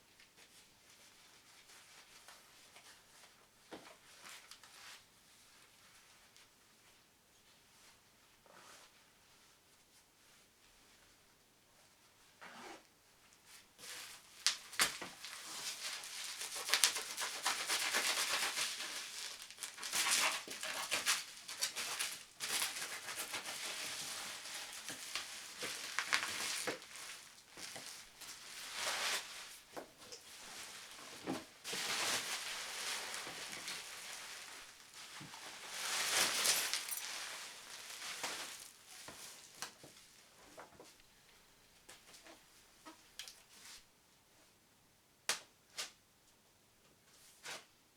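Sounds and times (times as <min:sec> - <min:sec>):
packaging rustling and crinkling: 0:13.8 - 0:41.0.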